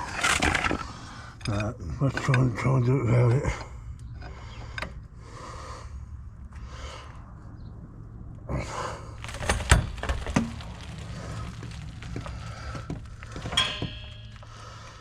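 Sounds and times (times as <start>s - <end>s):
rustling of tools: 0.0s - 1.5s, 9.2s - 15.0s
metallic knocks and clinks: 13.3s - 14.6s.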